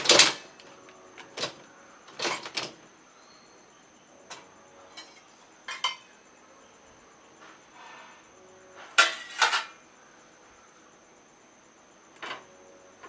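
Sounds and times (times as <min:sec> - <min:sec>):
dishwasher rack clicks and knocks: 0:00.0 - 0:00.5.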